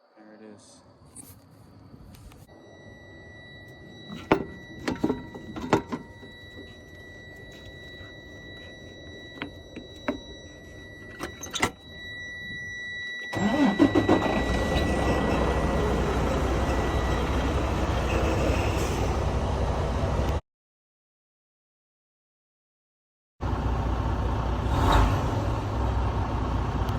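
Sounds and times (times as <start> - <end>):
diesel engine cranking and idling: 4.0 - 20.4, 23.4 - 26.9.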